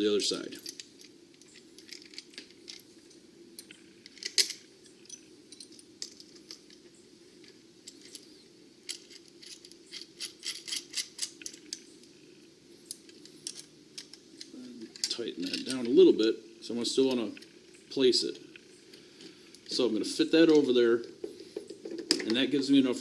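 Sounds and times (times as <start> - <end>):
faint steady hum: 0.0 - 23.0
small metal parts clinking: 0.4 - 16.1.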